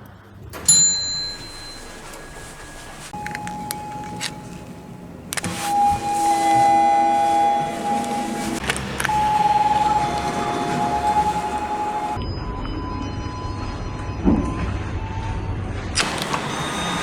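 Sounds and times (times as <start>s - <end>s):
elevator electronic tones: 0.6s - 12.2s, 16.0s - 17.0s.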